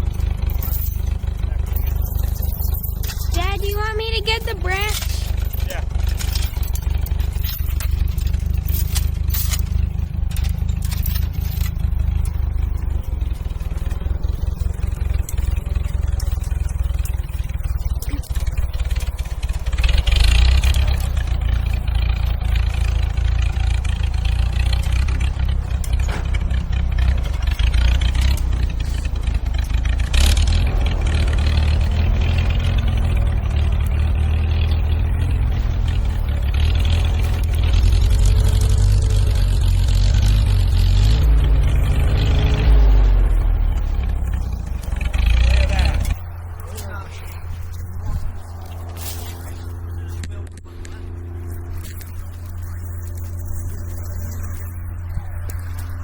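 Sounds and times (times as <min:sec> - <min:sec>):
brush and branches scraping: 0:00.0 - 0:22.6, 0:43.7 - 0:56.0
tractor engine rumbling: 0:00.0 - 0:56.0.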